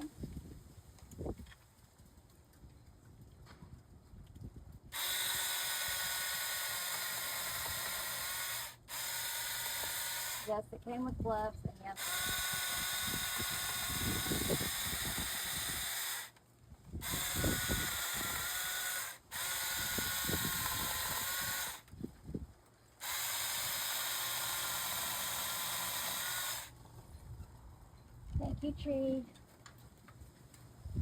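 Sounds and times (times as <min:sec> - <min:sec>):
electric mini chainsaw cutting: 0:04.9 - 0:10.5, 0:12.0 - 0:16.4, 0:17.0 - 0:21.9, 0:23.0 - 0:26.8.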